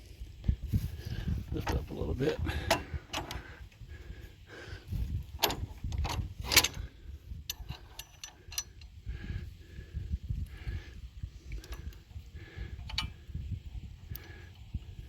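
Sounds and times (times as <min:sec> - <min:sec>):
steel hitch parts clanking: 0:01.4 - 0:03.7, 0:05.0 - 0:09.0
light metal clicks and clinks: 0:02.6 - 0:03.5, 0:05.4 - 0:09.0, 0:12.8 - 0:13.2.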